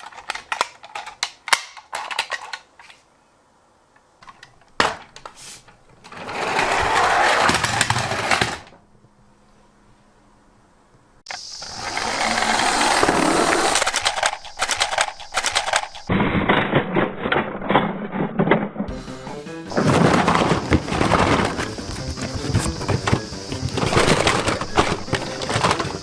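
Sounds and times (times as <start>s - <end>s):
toy gears and wheels whirring: 11.3s - 16.1s, 19.8s - 26.0s.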